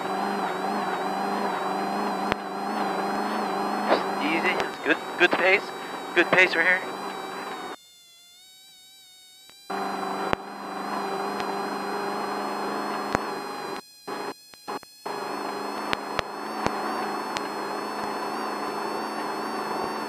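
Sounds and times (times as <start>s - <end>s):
off-road vehicle engine drone: 0.0s - 7.8s, 9.7s - 14.3s, 15.1s - 20.0s
sharp clicks: 3.4s - 7.8s, 9.5s - 10.5s, 11.1s - 11.6s, 15.8s - 18.1s.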